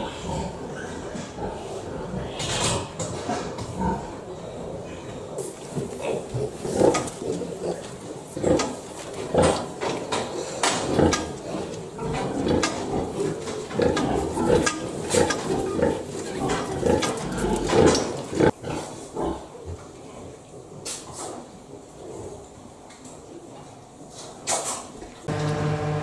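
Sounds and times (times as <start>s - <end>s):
pigs grunting and squealing: 0.0s - 20.8s.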